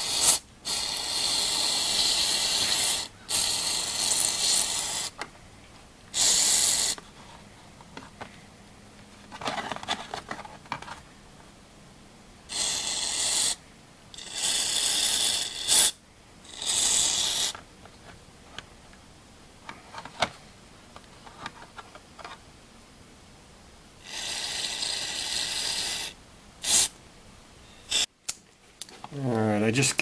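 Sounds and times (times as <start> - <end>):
aerosol spray hissing: 24.7 - 27.0.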